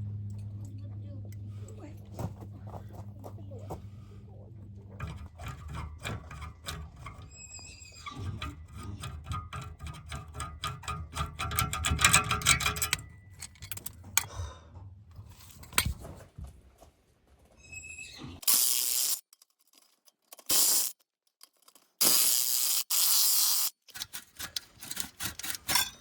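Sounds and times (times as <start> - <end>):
hand tools clicking on metal: 4.9 - 14.3, 18.4 - 26.0
brief squeak: 7.2 - 8.3, 17.6 - 18.4.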